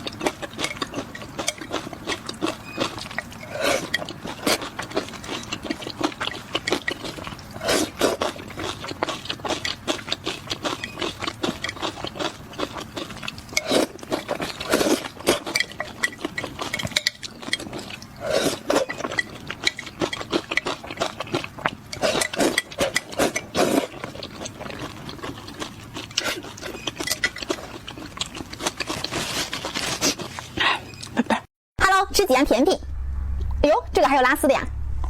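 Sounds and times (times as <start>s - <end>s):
chewing crispy food: 0.0s - 31.3s.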